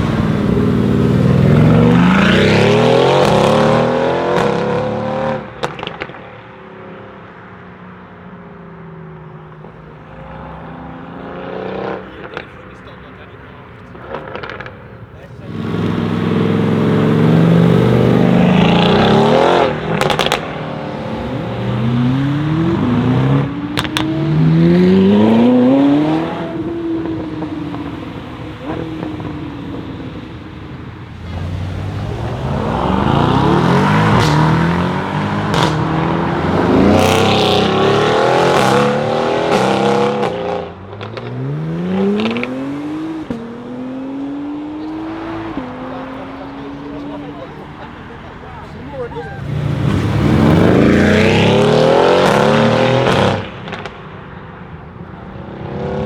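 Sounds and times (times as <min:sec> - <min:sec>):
car engine accelerating hard: 0:00.0 - 0:56.0
exhaust pops and crackles: 0:05.4 - 0:06.8, 0:09.3 - 0:22.2, 0:22.8 - 0:43.6, 0:44.7 - 0:55.6.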